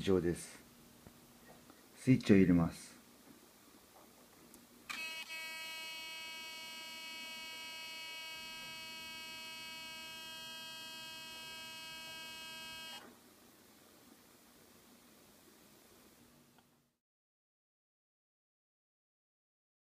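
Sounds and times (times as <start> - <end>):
high-pitched electronic whine: 5.0 - 13.1.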